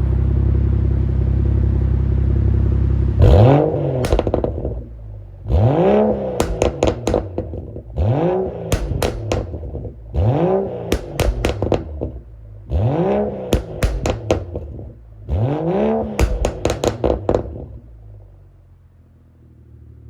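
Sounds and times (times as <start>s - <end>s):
car engine revving: 2.6s - 18.3s
exhaust pops and crackles: 3.2s - 18.0s.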